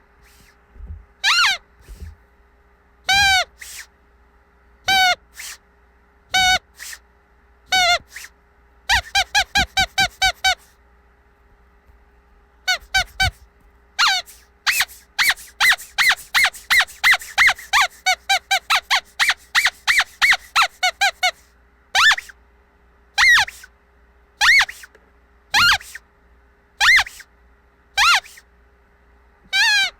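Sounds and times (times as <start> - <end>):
squeaky rubber dog toy: 1.2 - 2.2, 3.1 - 3.9, 4.9 - 5.6, 6.3 - 7.0, 7.7 - 8.3, 8.9 - 10.7, 12.7 - 13.4, 14.0 - 22.4, 23.2 - 23.7, 24.4 - 26.0, 26.8 - 27.3, 28.0 - 28.5, 29.5 - 29.9.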